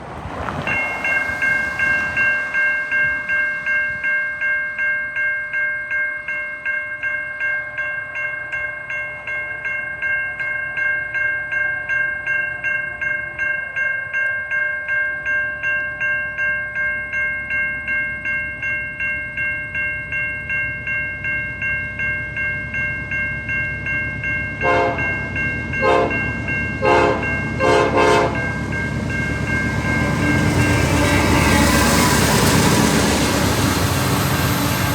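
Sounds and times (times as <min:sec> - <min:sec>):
train rumble: 0:00.0 - 0:04.5, 0:20.3 - 0:34.9
crossing warning bell ringing: 0:00.5 - 0:34.9
train horn blasts: 0:24.6 - 0:25.2, 0:25.8 - 0:28.6, 0:30.4 - 0:32.3.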